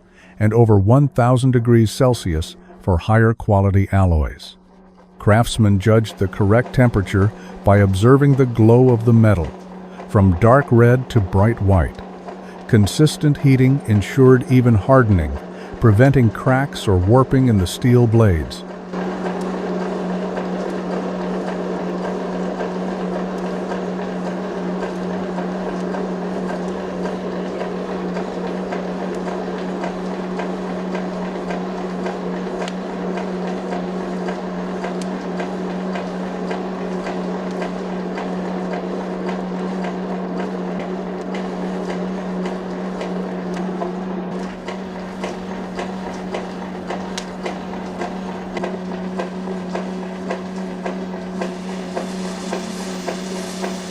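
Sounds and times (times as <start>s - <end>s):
workshop machine humming: 0.0s - 53.9s
machine rushing noise: 51.2s - 53.9s.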